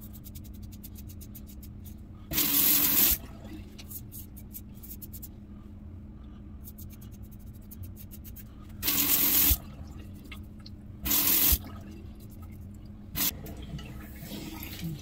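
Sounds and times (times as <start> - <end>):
tap running water: 11.1 - 11.8, 13.2 - 15.0.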